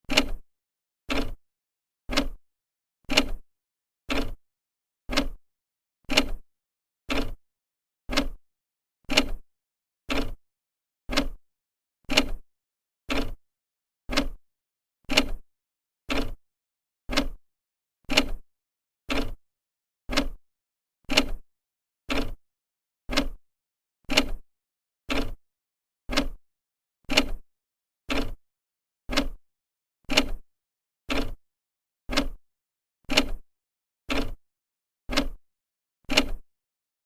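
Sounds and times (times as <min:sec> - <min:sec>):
clock ticking: 0:02.1 - 0:02.4, 0:08.1 - 0:08.4, 0:11.1 - 0:11.4, 0:17.1 - 0:17.4, 0:20.1 - 0:20.4, 0:23.1 - 0:23.4, 0:26.1 - 0:26.4, 0:29.1 - 0:29.4, 0:32.1 - 0:32.4, 0:34.1 - 0:34.4, 0:35.1 - 0:35.4.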